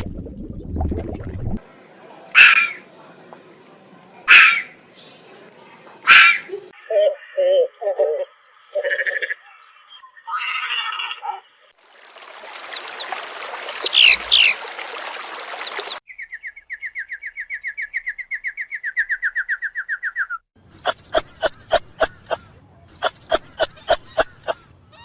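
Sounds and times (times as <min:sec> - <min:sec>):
birds chirping: 0:06.1 - 0:10.4, 0:11.0 - 0:25.0.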